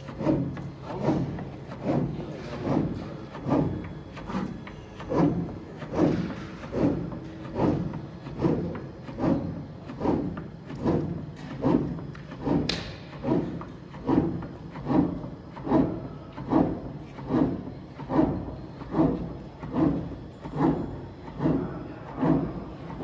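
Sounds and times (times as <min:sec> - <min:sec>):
cutting machine rhythmic thuds: 0:00.0 - 0:23.0.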